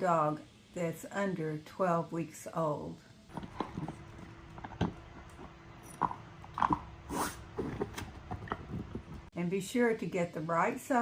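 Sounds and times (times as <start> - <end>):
dog gnawing on a chew: 3.3 - 6.9.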